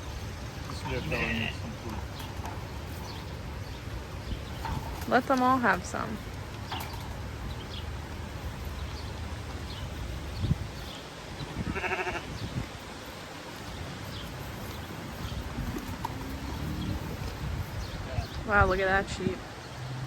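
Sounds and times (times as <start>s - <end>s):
sheep or goat bleating: 0.9s - 1.8s, 11.5s - 12.4s.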